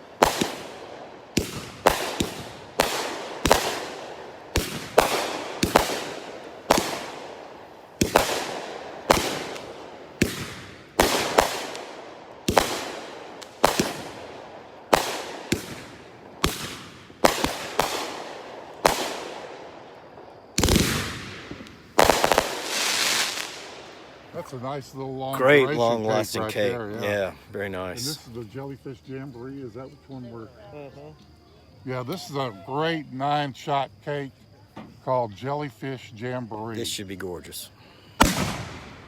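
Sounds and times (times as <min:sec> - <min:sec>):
fireworks bangs: 0:00.0 - 0:24.5, 0:38.2 - 0:39.0.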